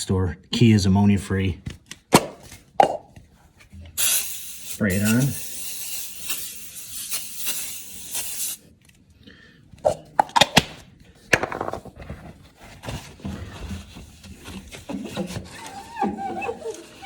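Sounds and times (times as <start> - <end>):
spray bottle hissing: 4.0 - 8.6.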